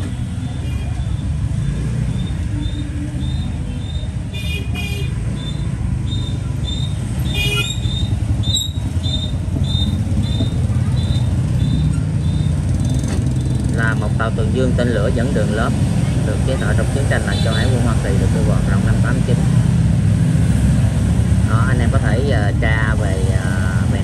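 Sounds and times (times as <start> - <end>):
street traffic rumble: 0.0 - 24.0
car horn toots: 4.3 - 5.3, 7.2 - 11.9.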